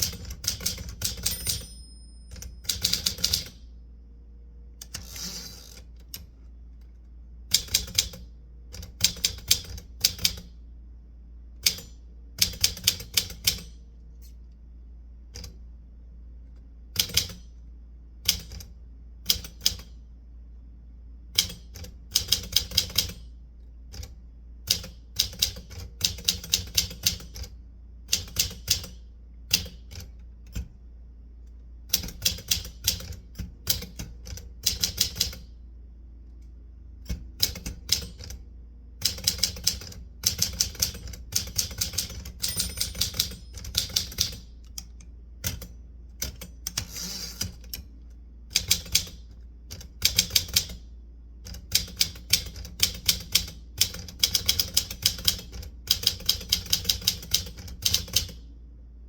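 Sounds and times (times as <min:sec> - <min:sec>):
typewriter keys clicking: 0:00.0 - 0:03.6, 0:07.5 - 0:08.2, 0:11.6 - 0:13.7, 0:17.0 - 0:17.4, 0:21.4 - 0:23.2, 0:24.7 - 0:27.5, 0:28.1 - 0:30.1, 0:32.0 - 0:35.5, 0:37.4 - 0:38.4, 0:39.0 - 0:44.8, 0:48.5 - 0:50.8, 0:51.5 - 0:58.4.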